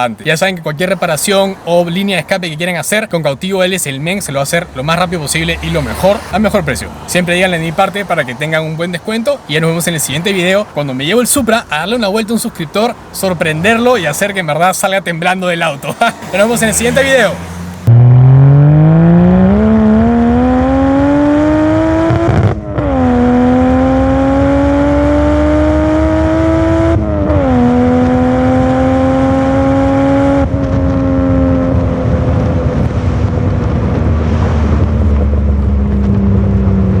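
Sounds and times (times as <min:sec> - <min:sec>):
car engine accelerating hard: 0:16.0 - 0:37.0.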